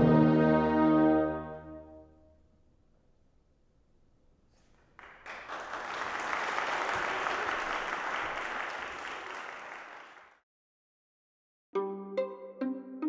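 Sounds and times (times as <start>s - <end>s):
audience applauding: 4.9s - 10.4s.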